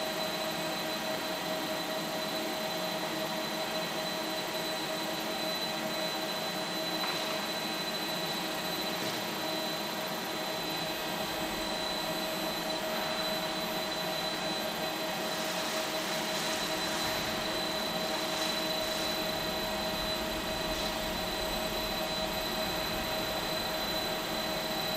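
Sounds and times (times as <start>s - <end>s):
constant high hum: 0.0s - 24.9s
high whine: 6.8s - 24.9s
welding arc hiss: 15.1s - 24.9s.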